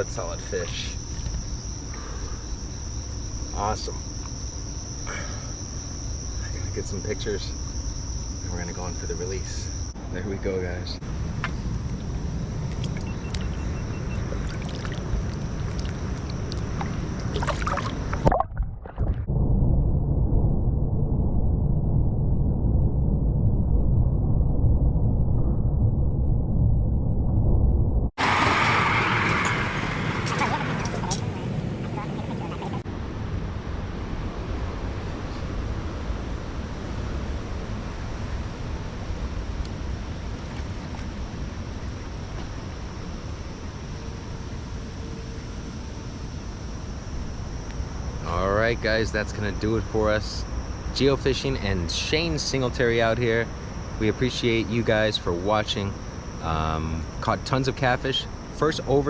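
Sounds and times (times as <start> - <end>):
river water splashing at bank: 14.4 - 18.5, 28.2 - 32.8
wind buffeting microphone: 28.2 - 32.8
muffled low rumble: 29.4 - 35.7.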